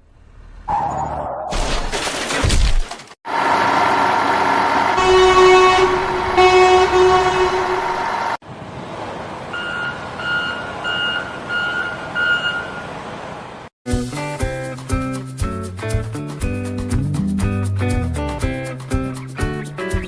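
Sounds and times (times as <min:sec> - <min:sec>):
truck engine running: 0:03.3 - 0:09.5
truck horn honks: 0:04.7 - 0:08.4
reversing alarm beeping: 0:09.6 - 0:12.8.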